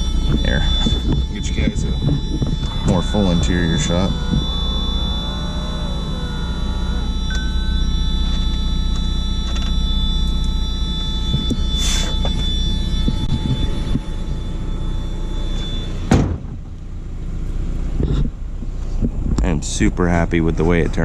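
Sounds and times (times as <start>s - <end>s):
low rumble: 0.0s - 21.0s
thin high whine: 0.0s - 21.0s
sharp thump: 16.1s - 16.7s.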